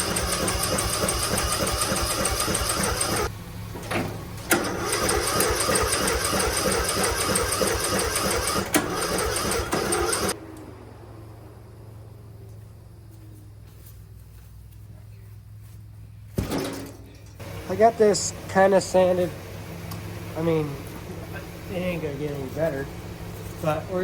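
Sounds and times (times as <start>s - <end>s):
electric starter cranking engine: 0.0s - 3.4s, 4.2s - 10.7s, 16.4s - 23.2s.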